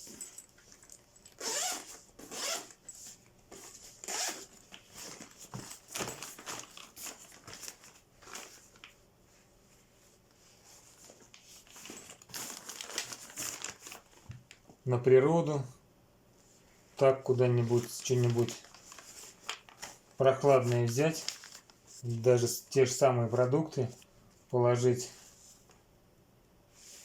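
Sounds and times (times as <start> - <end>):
fabric rustling: 0.0 - 14.3, 17.5 - 22.1
zipper being pulled: 1.3 - 2.8, 4.0 - 4.5.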